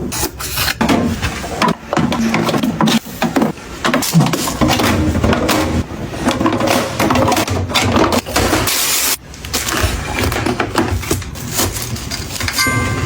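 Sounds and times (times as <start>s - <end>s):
items clattering set down: 0.8s - 13.0s
packaging rustling and crinkling: 2.3s - 12.6s.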